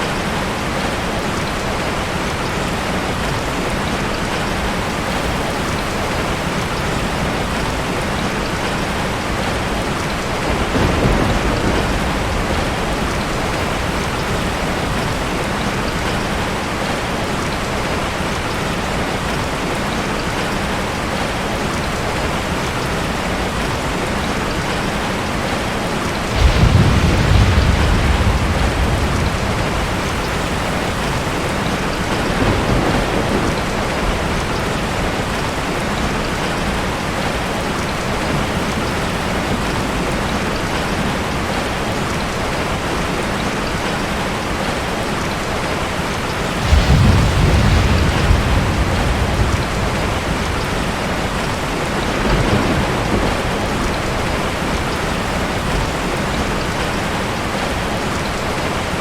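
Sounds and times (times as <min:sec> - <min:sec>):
heavy rain: 0:00.0 - 0:59.0
thunder rolling: 0:09.2 - 0:16.8, 0:26.3 - 0:36.8, 0:46.5 - 0:57.6.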